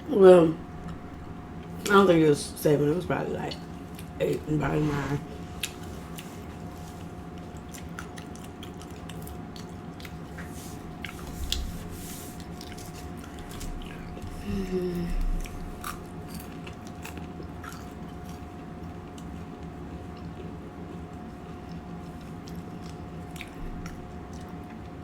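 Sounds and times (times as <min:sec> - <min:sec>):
chewing with wet mouth clicks: 0:05.5 - 0:11.7, 0:12.4 - 0:14.3, 0:15.4 - 0:25.0
low vocal sound: 0:14.3 - 0:15.6.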